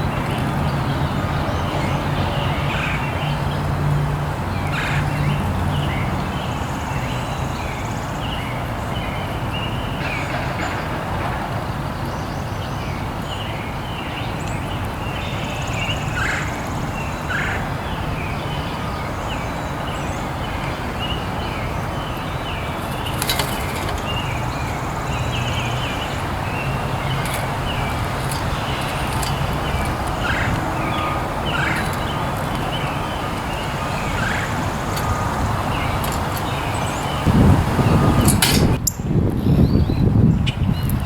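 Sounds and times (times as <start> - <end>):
birds chirping: 12.4 - 41.0.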